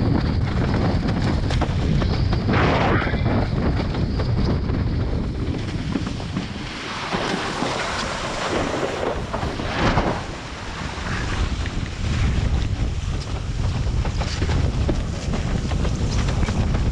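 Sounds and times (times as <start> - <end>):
wind buffeting microphone: 0.0 - 16.9
water rushing and splashing: 6.2 - 13.2.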